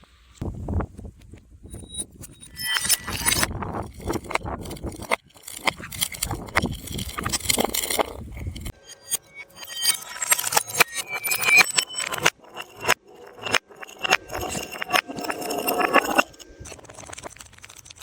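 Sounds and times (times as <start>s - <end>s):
objects cracking and crunching: 16.1s - 18.0s.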